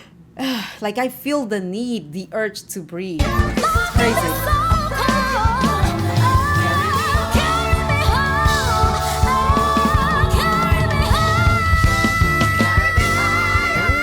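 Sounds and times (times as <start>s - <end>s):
band with drums and bass: 3.2s - 14.0s
woman singing soul ballad: 3.2s - 14.0s.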